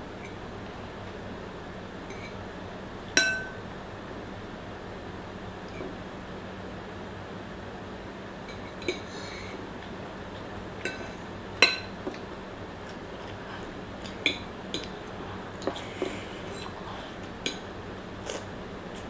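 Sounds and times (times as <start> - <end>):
utensils clinking against a dish: 3.2 - 3.6, 8.5 - 9.6, 10.8 - 12.2.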